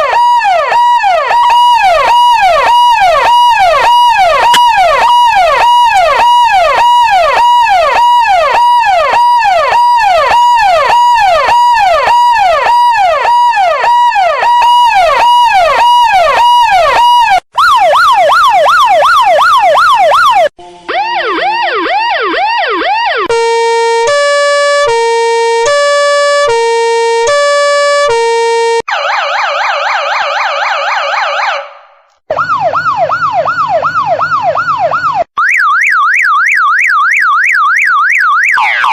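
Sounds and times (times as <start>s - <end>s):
siren yelp: 0.0s - 38.9s
two-tone hi-lo siren: 0.0s - 38.9s
buzzy siren warble: 19.2s - 28.9s, 32.3s - 35.2s.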